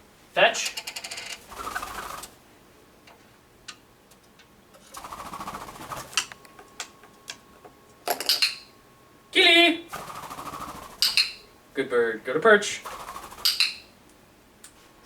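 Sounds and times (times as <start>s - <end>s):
bird wingbeats fluttering: 0.9s - 2.4s, 4.8s - 7.0s, 9.9s - 11.4s, 12.8s - 13.9s.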